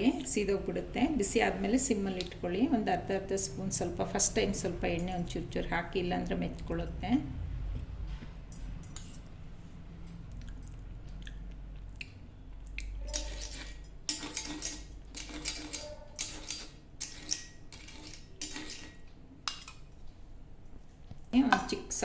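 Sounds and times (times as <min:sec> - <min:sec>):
metal spoon clinking on steel: 0:08.5 - 0:09.3, 0:13.0 - 0:20.1, 0:21.4 - 0:22.0.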